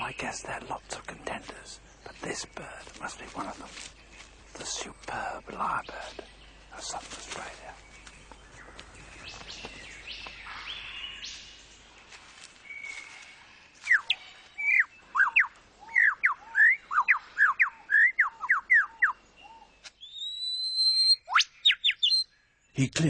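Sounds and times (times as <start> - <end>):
faint forest birdsong: 0.0 - 23.0
lyrebird whistled song: 12.6 - 22.3.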